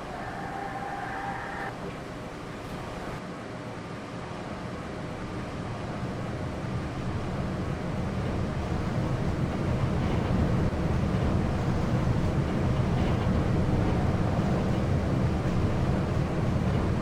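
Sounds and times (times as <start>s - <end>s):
lift car rumbling in shaft: 5.2s - 17.0s.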